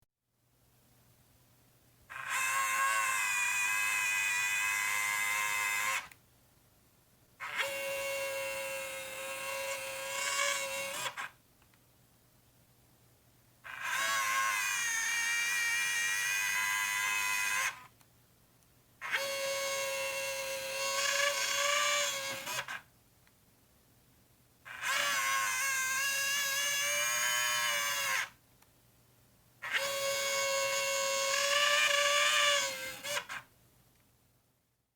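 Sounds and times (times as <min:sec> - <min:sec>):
camera motor whining grind: 0:02.1 - 0:06.1, 0:07.4 - 0:11.3, 0:13.7 - 0:17.9, 0:19.0 - 0:22.8, 0:24.7 - 0:28.3, 0:29.6 - 0:33.4.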